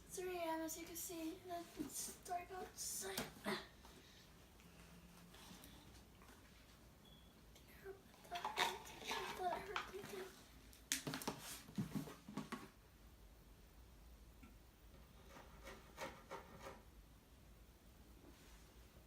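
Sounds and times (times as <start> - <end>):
rubbing and knocks of small objects: 8.2 - 12.6.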